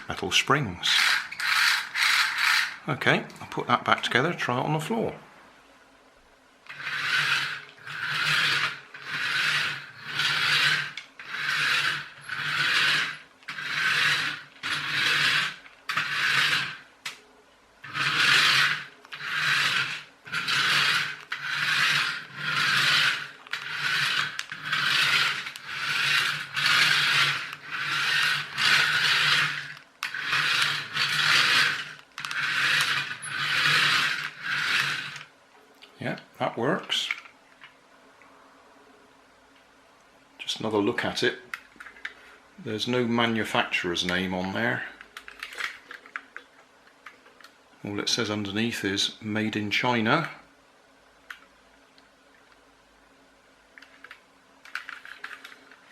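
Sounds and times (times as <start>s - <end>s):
toy car motor whirring: 0.8s - 2.8s, 6.7s - 17.2s, 17.8s - 35.3s, 45.2s - 46.4s, 53.8s - 55.9s.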